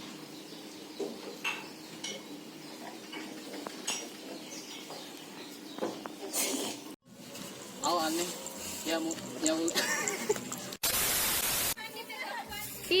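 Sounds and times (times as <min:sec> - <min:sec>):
dishes and utensils clinking: 0:01.4 - 0:04.9.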